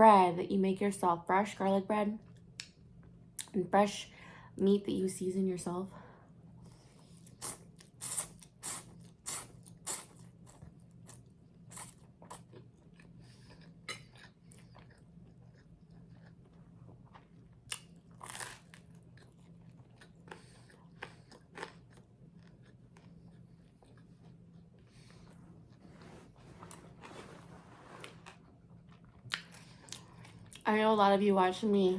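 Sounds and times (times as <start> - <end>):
faint low hum: 0.0 - 31.9
chewing crunchy bread: 6.6 - 30.7.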